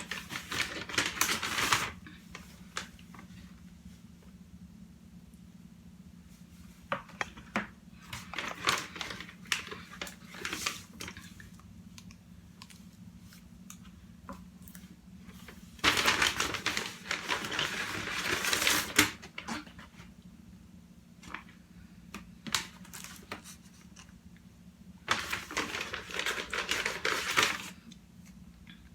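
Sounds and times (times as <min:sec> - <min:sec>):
packaging rustling and crinkling: 0:00.0 - 0:03.4, 0:07.0 - 0:11.4, 0:15.3 - 0:20.1, 0:22.4 - 0:24.0, 0:25.0 - 0:27.8.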